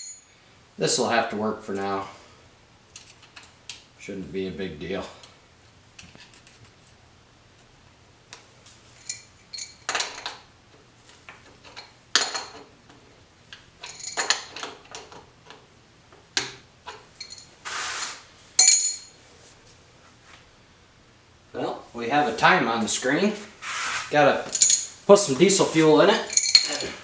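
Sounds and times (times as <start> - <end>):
metal tools clinking: 8.9 - 10.4, 11.4 - 12.7, 13.8 - 15.6, 16.9 - 17.6, 18.6 - 19.2, 24.4 - 25.0, 25.7 - 27.0
scraping rustle: 16.9 - 18.4, 23.2 - 27.0.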